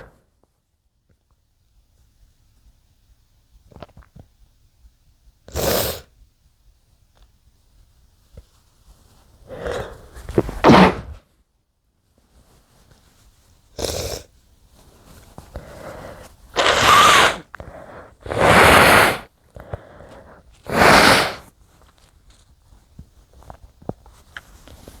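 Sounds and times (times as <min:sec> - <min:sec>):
person sneezing: 0:05.5 - 0:06.0, 0:09.5 - 0:11.2, 0:16.6 - 0:19.3, 0:20.2 - 0:21.5
breathing in: 0:09.4 - 0:10.4, 0:15.5 - 0:21.5.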